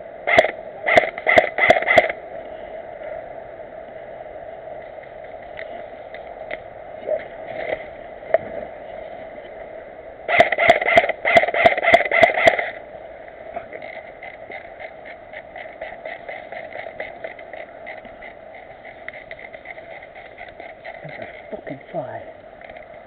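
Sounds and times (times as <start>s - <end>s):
airsoft guns firing: 0.3s - 2.2s, 10.3s - 12.8s.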